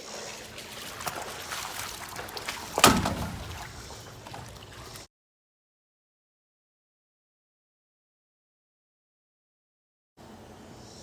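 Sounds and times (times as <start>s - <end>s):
pool water sloshing and splashing: 0.0s - 5.1s
loud splash: 0.4s - 5.1s.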